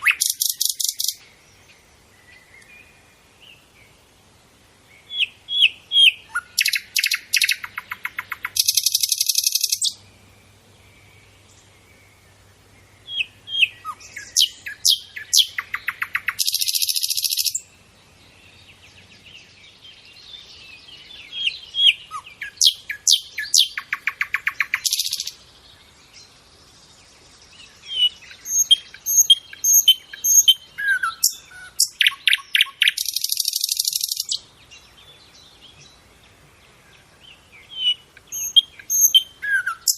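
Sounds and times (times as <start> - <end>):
nightingale singing: 0.0 - 39.9.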